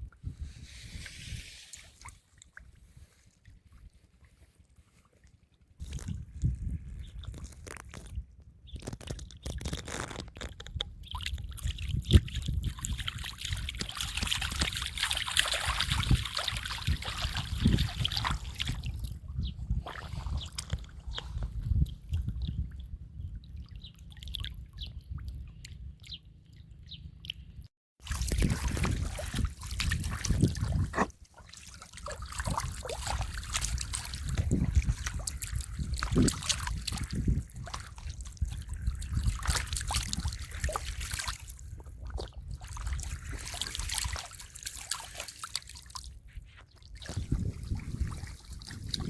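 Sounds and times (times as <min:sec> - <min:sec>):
muddy water splashing: 0:08.8 - 0:22.7, 0:28.0 - 0:49.0.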